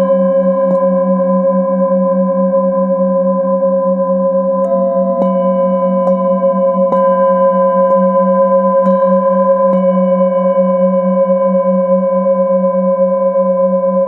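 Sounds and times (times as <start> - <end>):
singing bowls humming and ringing: 0.0 - 14.0
singing bowl strikes: 4.4 - 11.8.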